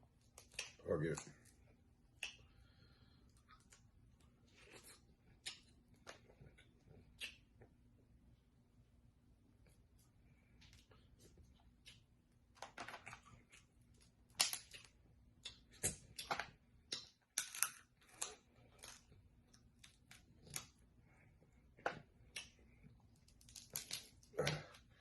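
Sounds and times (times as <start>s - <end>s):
crab shells cracking: 13.9s - 20.7s, 22.4s - 24.8s.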